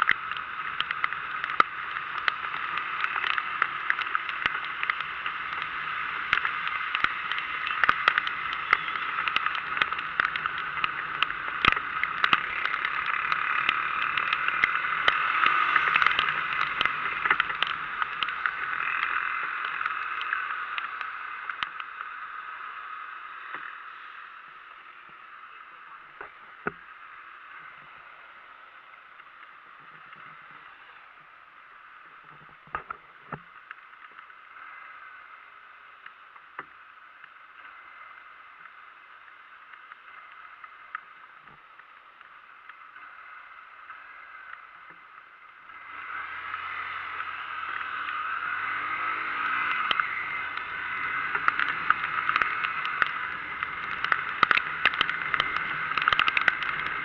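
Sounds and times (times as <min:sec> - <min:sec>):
sharp clicks: 0:00.0 - 0:22.1, 0:45.8 - 0:57.0
wind and rain on microphone: 0:00.0 - 0:57.0.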